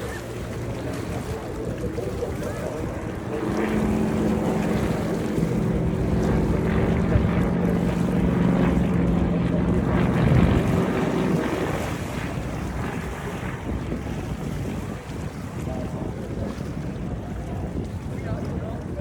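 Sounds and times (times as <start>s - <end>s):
engine drone: 0.0s - 13.7s
wind buffeting microphone: 0.0s - 19.0s.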